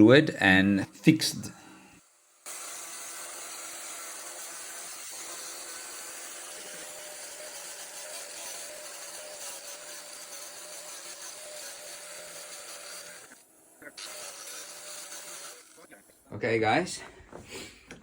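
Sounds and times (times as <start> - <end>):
power tool grinding fiberglass: 2.0 - 16.3.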